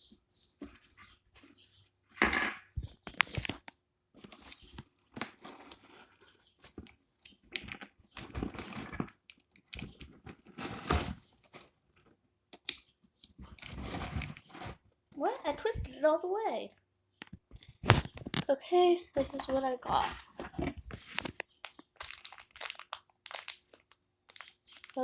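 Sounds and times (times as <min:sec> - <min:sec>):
clicks and scraping rattles: 0:02.2 - 0:12.1.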